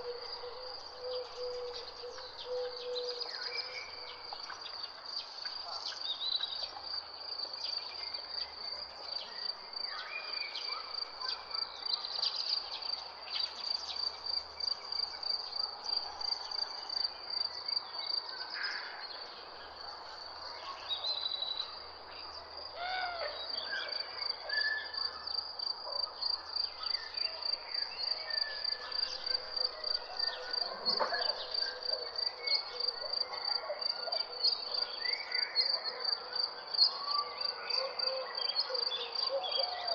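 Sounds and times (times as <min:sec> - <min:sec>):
bird calls and chirps: 0:00.0 - 0:06.8, 0:18.4 - 0:36.0, 0:36.7 - 0:39.9.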